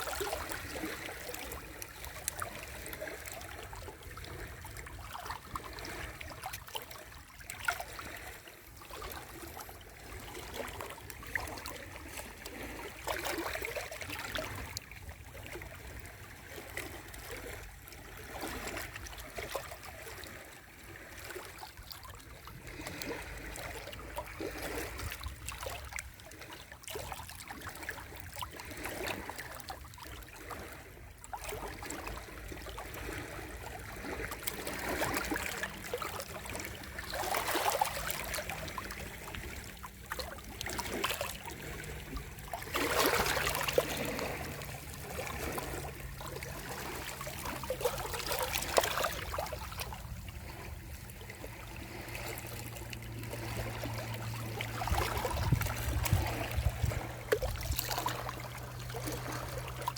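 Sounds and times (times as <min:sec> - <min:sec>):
sea waves washing onto shore: 0:32.7 - 0:59.9
louder waves breaking: 0:40.4 - 0:59.9.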